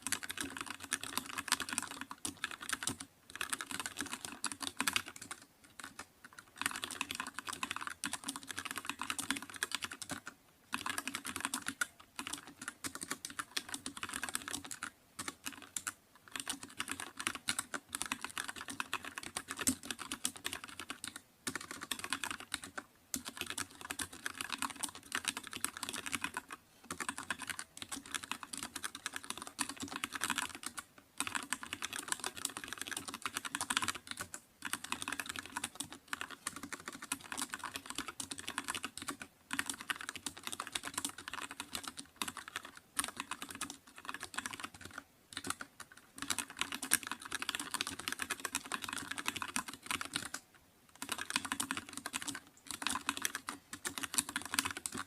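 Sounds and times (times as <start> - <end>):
typing on computer keyboard: 0.0 - 55.0.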